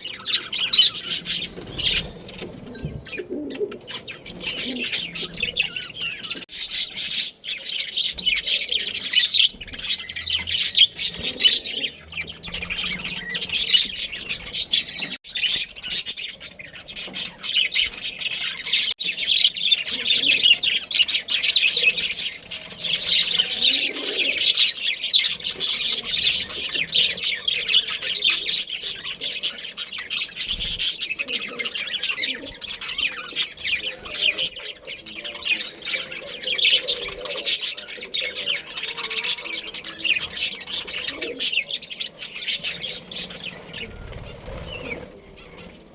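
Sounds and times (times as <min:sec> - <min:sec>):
budgerigars chattering and chirping: 0:00.0 - 0:45.9.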